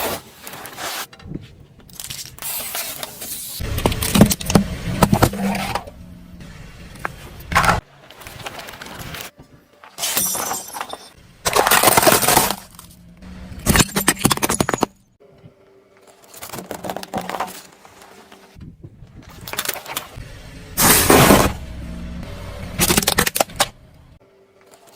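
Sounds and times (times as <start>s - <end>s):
objects crushed under car tyre: 7.5s - 15.0s, 16.3s - 18.5s, 20.8s - 21.7s, 22.8s - 23.7s.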